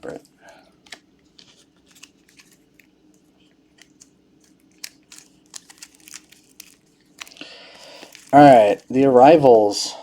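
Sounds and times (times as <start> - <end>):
cards clicking and flicking: 0.8 - 3.0, 3.7 - 8.4.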